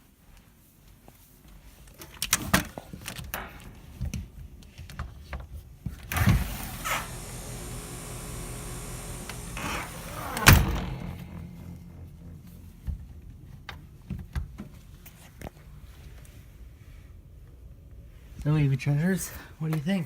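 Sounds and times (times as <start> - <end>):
air conditioner unit humming: 1.8 - 20.0
knocks and rustles: 2.0 - 15.6
sharp bump: 6.1 - 13.7.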